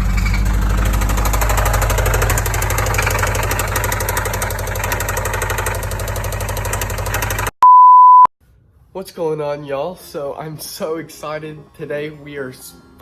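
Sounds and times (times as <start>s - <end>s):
engine idling with rapid knocking: 0.0s - 7.5s.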